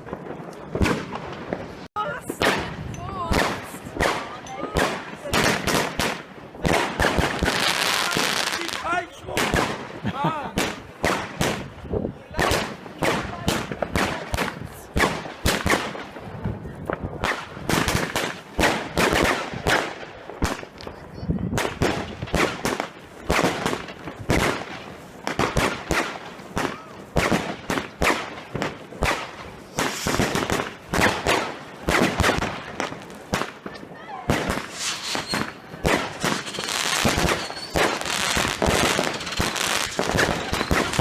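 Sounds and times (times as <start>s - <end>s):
firecracker bangs and explosions: 0.0s - 41.0s.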